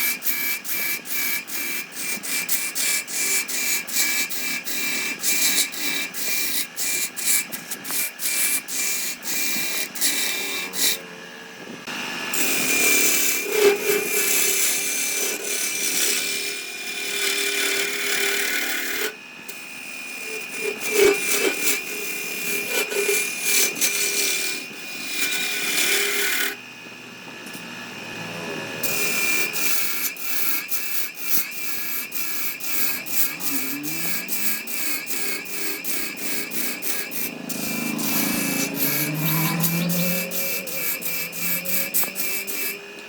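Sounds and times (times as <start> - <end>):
tool scraping on wood: 0.0 - 11.1, 12.4 - 26.6, 28.8 - 43.0
power tool whine: 0.0 - 43.0
rapid regular strokes: 30.4 - 42.8.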